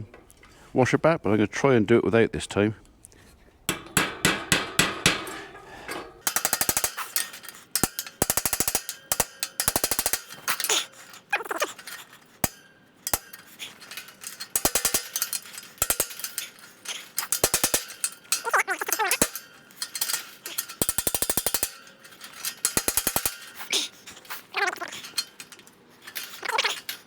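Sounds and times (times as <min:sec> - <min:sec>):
hammer striking steel: 0:03.7 - 0:07.2, 0:14.6 - 0:16.4, 0:17.2 - 0:18.4, 0:20.8 - 0:21.9.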